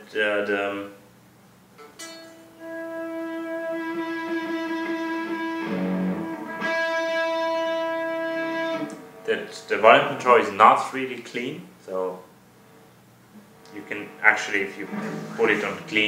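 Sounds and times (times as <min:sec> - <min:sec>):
volume pot crackling: 0:13.7 - 0:16.0
sustained electric guitar note: 0:14.7 - 0:16.0.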